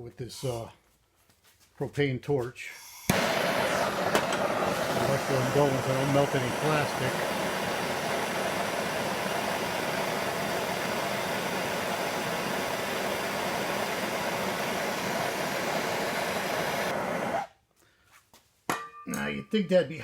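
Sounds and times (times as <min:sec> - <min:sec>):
propane torch flame hissing: 0:02.7 - 0:17.5.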